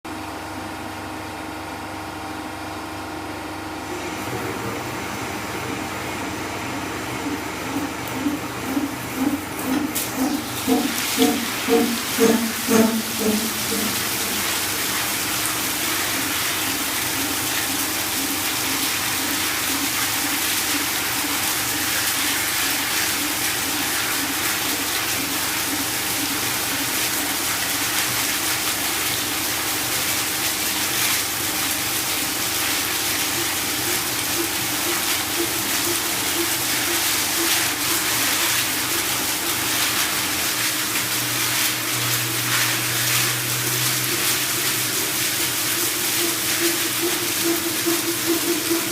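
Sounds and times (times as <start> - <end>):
machine hum: 0.1 - 48.9
low machine tone: 3.8 - 18.2, 32.5 - 40.1
coolant spray hissing: 4.8 - 48.9.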